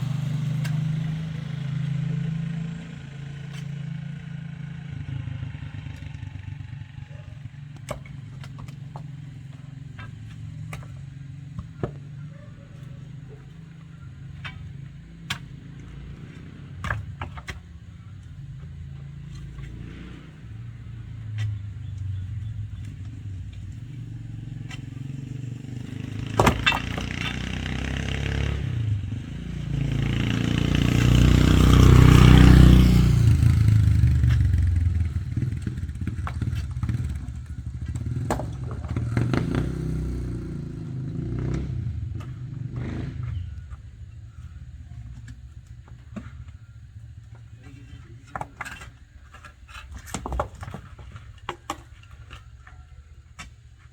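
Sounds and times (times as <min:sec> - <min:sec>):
motorcycle passing: 0:00.0 - 0:52.8
low engine rumble: 0:00.0 - 0:53.9.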